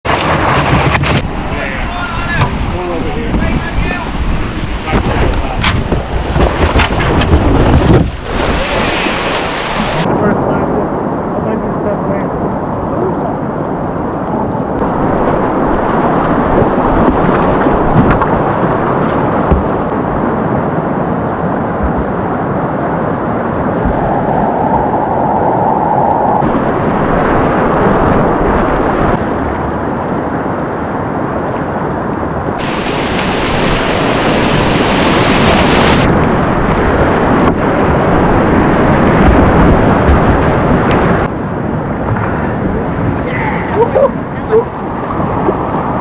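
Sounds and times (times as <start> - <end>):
wind buffeting microphone: 0.0 - 46.0
river rapids rushing: 8.2 - 10.1, 14.8 - 21.1, 26.4 - 29.1, 32.6 - 36.1.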